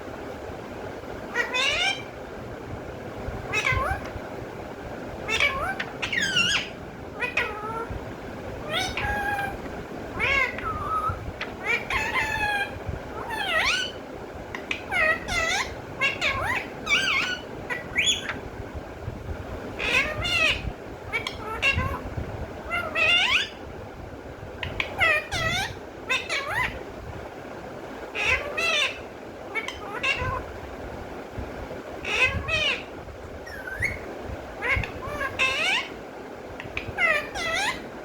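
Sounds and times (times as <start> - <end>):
parrot calling: 1.3 - 2.2, 3.5 - 4.2, 5.2 - 8.0, 8.6 - 18.4, 19.8 - 22.0, 22.7 - 23.6, 24.6 - 26.8, 28.1 - 30.5, 32.0 - 38.0.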